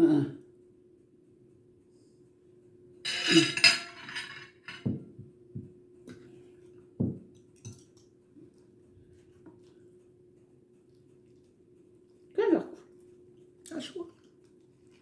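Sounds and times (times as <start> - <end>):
dishes and utensils clinking: 3.1 - 5.2.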